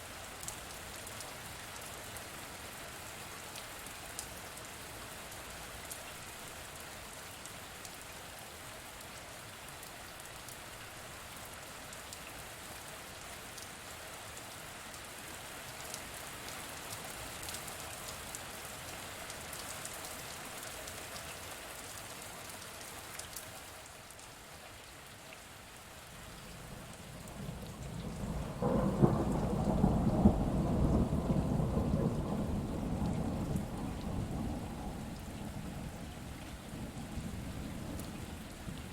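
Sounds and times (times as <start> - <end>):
steady rain falling: 0.0 - 38.9
thunder rumbling: 27.0 - 38.9.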